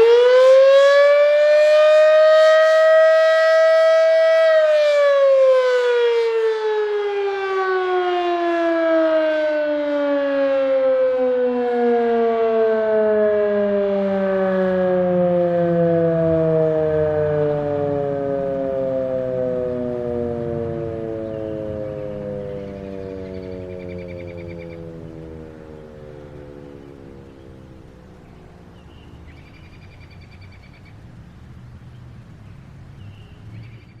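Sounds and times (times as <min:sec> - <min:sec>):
fire siren winding down: 0:00.0 - 0:28.8
low steady rumble: 0:17.6 - 0:34.0
bird trilling and chirping: 0:21.3 - 0:24.9, 0:25.7 - 0:31.0.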